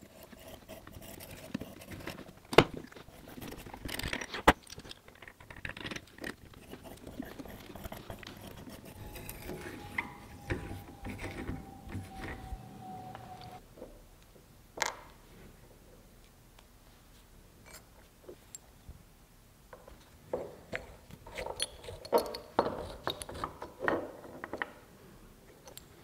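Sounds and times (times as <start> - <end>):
metal parts and tools clinking: 21.3 - 23.5.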